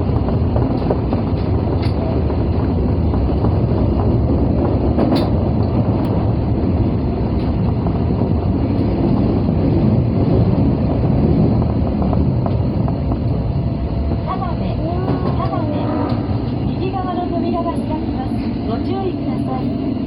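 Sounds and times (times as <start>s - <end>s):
subway train wheels rumbling: 0.0s - 20.0s.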